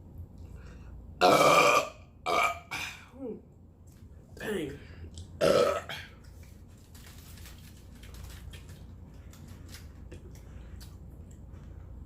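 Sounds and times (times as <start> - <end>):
steady low hum: 0.0 - 12.0
crisp chewing crackles: 6.2 - 11.8.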